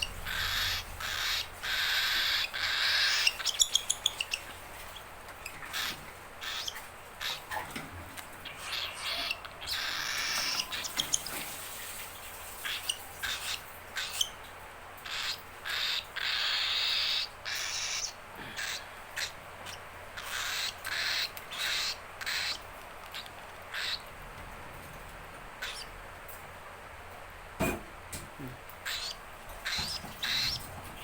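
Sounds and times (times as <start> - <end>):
cockatiel chick begging calls: 0.3 - 4.5, 5.6 - 7.4, 8.4 - 11.2, 15.1 - 22.6, 23.2 - 24.0, 25.6 - 25.9, 28.8 - 30.6.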